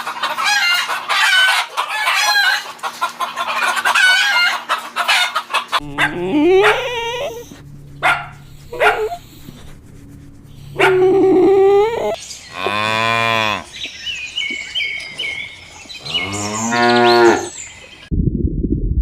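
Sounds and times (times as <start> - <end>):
cattle mooing: 5.8 - 13.7, 16.0 - 17.6.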